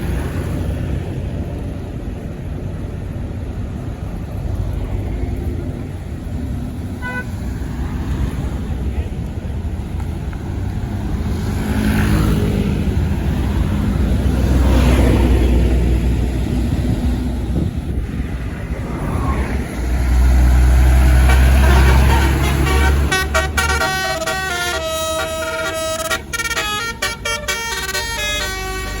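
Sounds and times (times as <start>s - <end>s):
bus engine rumbling: 0.0s - 29.0s
multi-note bus horn tune: 7.0s - 7.4s, 21.0s - 29.0s.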